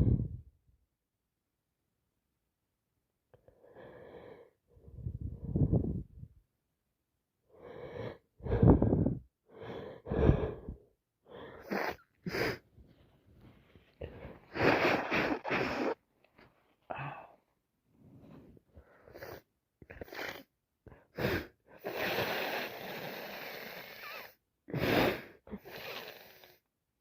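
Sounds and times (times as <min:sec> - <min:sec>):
wheezy in-breaths: 0:07.6 - 0:16.0, 0:18.0 - 0:26.6.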